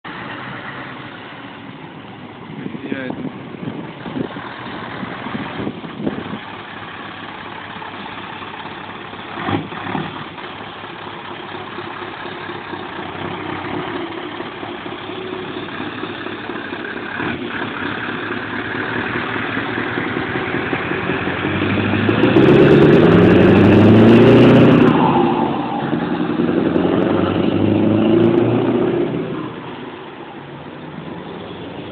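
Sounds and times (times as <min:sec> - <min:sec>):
diesel truck engine revving: 0:02.9 - 0:31.9.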